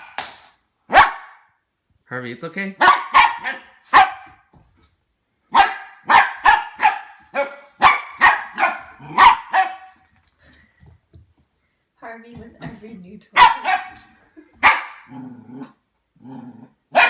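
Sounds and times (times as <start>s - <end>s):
puppy barking: 0.9s - 1.5s, 2.8s - 4.5s, 5.5s - 10.1s, 13.4s - 15.2s.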